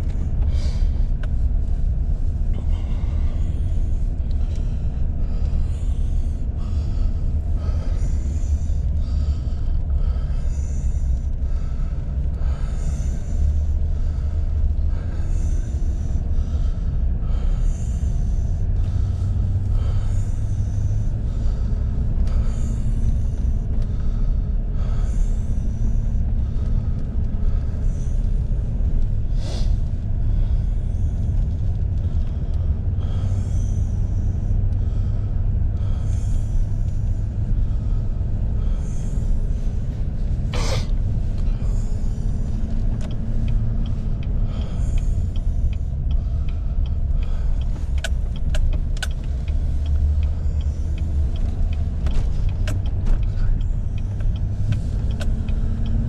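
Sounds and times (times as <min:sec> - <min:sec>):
truck engine and road rumble: 0:00.0 - 0:56.0
light clicks: 0:42.3 - 0:56.0.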